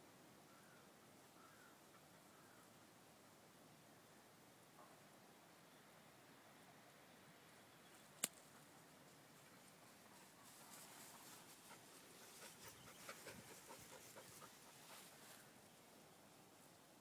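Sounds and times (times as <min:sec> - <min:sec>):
faint light rustling: 0:08.0 - 0:16.0.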